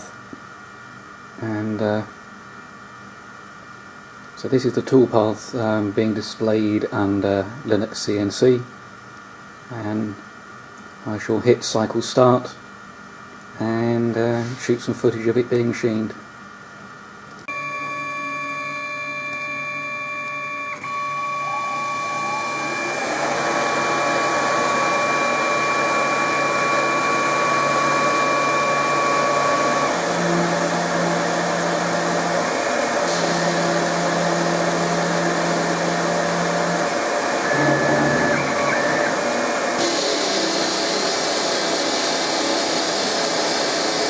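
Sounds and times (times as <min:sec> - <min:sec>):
lathe motors whining: 0:17.5 - 0:44.0
low motor hum: 0:20.6 - 0:39.8.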